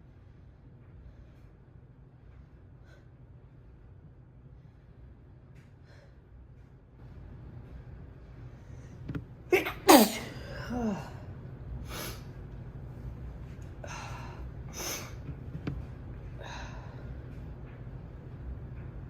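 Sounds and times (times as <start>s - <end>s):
person sneezing: 9.5s - 11.1s.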